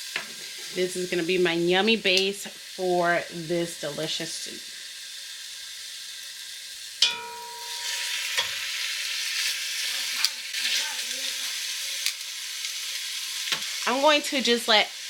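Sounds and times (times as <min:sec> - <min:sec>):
chicken sizzling in hot oil: 0:00.0 - 0:15.0
sharp metallic clink: 0:07.0 - 0:08.6.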